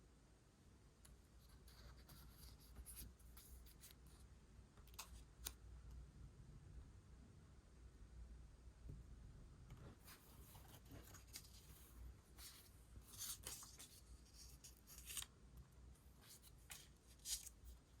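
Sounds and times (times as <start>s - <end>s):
paper rustling and scratching: 10.0s - 15.3s, 16.2s - 18.0s.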